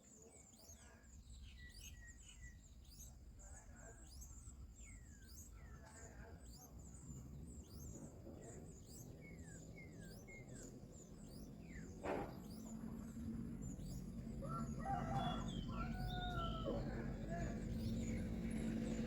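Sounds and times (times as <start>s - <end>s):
small birds chirping: 0.0s - 19.0s
drawn-out bird calls: 1.8s - 19.0s
sharp knock: 12.0s - 12.4s.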